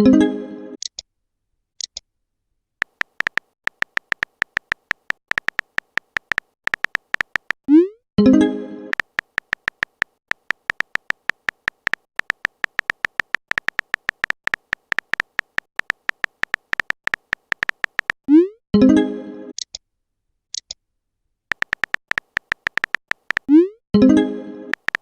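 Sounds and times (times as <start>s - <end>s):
typing clicks: 2.8s - 7.6s, 8.9s - 18.2s, 21.5s - 23.6s, 24.7s - 25.0s.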